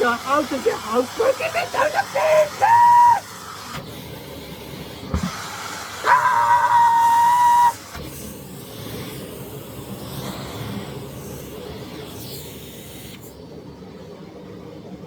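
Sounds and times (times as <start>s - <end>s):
vacuum cleaner on carpet: 0.0s - 13.5s
high whistle: 6.8s - 7.8s.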